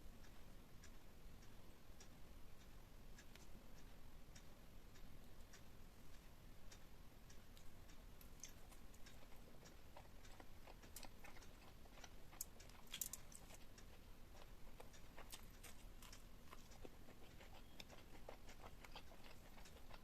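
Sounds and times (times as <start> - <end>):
chewing crackles: 7.4 - 20.0.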